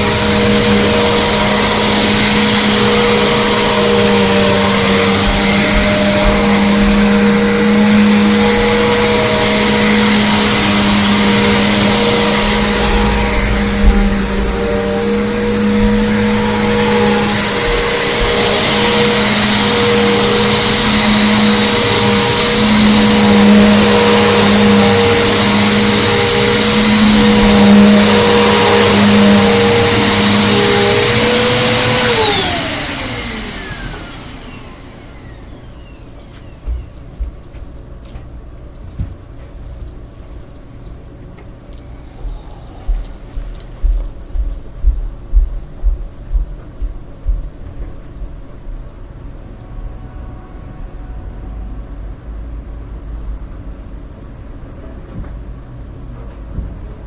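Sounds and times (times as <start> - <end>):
vacuum cleaner motor whine: 0.0 - 37.7, 41.7 - 48.0.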